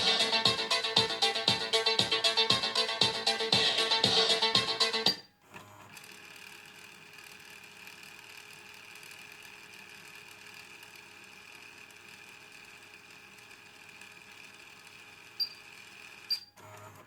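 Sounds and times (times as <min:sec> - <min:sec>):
music: 0:00.0 - 0:05.2.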